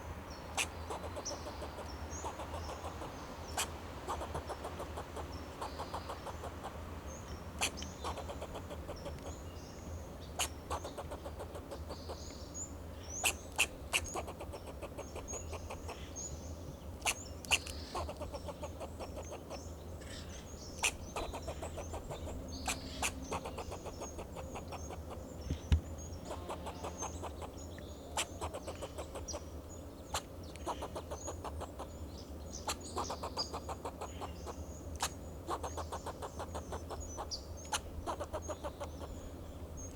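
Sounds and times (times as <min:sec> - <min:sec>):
squirrel clucking alarm barks: 0:00.6 - 0:06.8, 0:07.6 - 0:09.3, 0:10.4 - 0:12.3, 0:13.2 - 0:16.0, 0:17.0 - 0:19.6, 0:20.8 - 0:25.3, 0:26.2 - 0:29.5, 0:30.1 - 0:31.9, 0:32.6 - 0:39.2.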